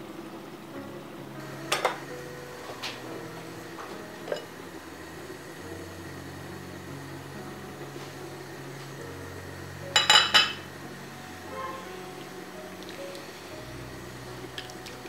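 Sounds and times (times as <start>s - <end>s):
soft background music: 0.0s - 15.0s
kitchenware clinking: 1.7s - 2.1s, 4.2s - 4.5s, 9.9s - 10.6s.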